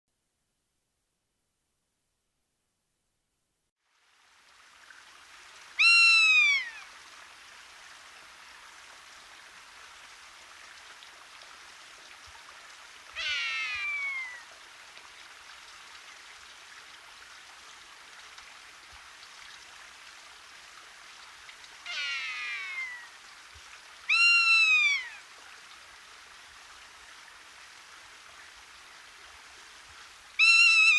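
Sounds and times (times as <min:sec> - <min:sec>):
faint steady hiss: 0:00.1 - 0:30.9
buzzard mewing calls: 0:13.2 - 0:14.4, 0:21.9 - 0:23.0, 0:24.1 - 0:25.2, 0:30.4 - 0:30.9.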